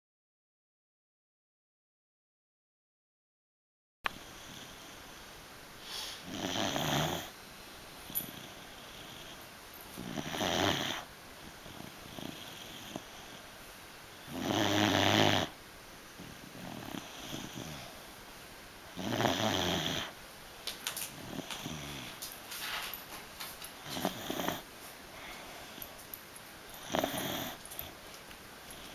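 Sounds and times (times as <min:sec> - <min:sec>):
dog snoring: 0:04.2 - 0:05.0, 0:06.2 - 0:07.4, 0:08.1 - 0:13.5, 0:14.2 - 0:15.6, 0:16.2 - 0:18.0, 0:18.9 - 0:20.2, 0:21.1 - 0:22.2, 0:23.8 - 0:24.7, 0:26.7 - 0:28.0, 0:28.7 - 0:28.9
soft dog breaths: 0:23.6 - 0:28.9.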